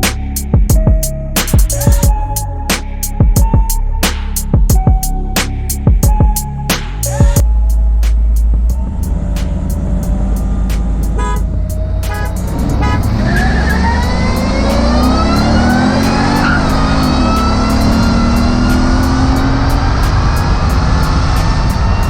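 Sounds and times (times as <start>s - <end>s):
background music with steady beat: 0.0s - 22.0s
car engine accelerating hard: 8.6s - 22.0s.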